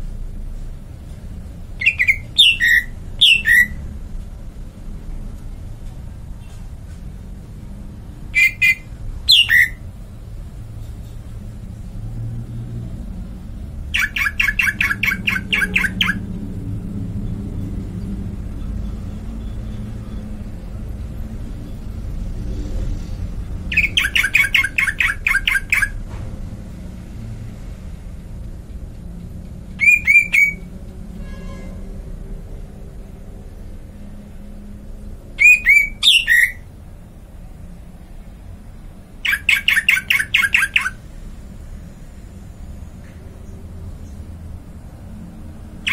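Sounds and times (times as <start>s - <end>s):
bird chirping: 1.8s - 3.9s, 8.2s - 9.8s, 13.9s - 16.6s, 23.5s - 26.0s, 29.8s - 30.7s, 35.4s - 36.7s, 39.2s - 41.0s.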